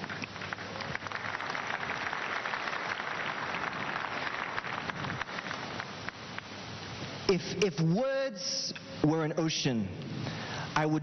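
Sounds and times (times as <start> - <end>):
congregation applauding: 0.0 - 6.5.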